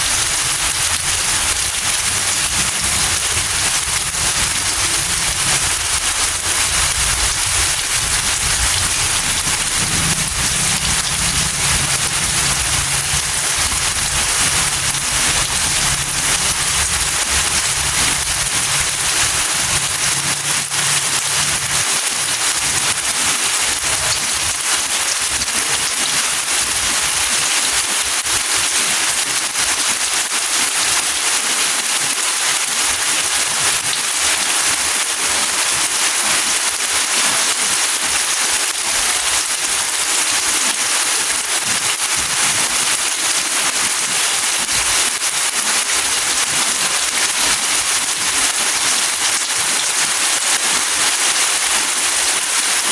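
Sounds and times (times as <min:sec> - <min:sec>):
steady rain falling: 0:00.0 - 0:52.9
low hum: 0:00.4 - 0:21.8.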